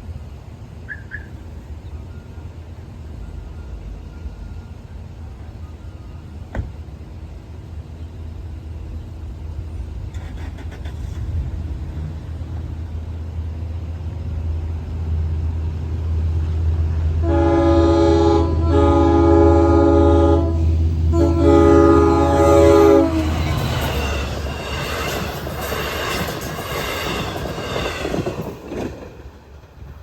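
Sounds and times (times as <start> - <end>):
diesel train engine rumble: 0.0 - 30.0
train horn blasts: 17.2 - 25.0.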